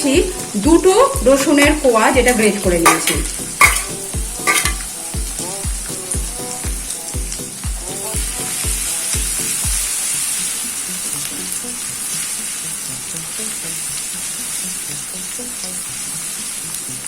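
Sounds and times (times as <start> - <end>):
background music with low beats: 0.0 - 10.0
ginger and garlic sizzling in oil: 0.0 - 17.0.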